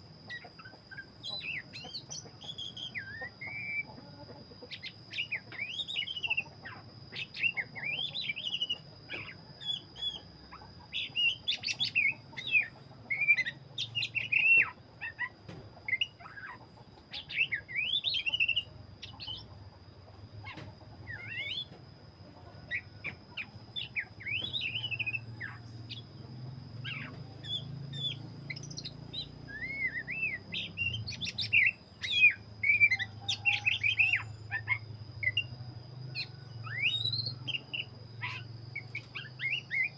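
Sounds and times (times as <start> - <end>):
bird singing whistled phrases: 36.2 - 39.9.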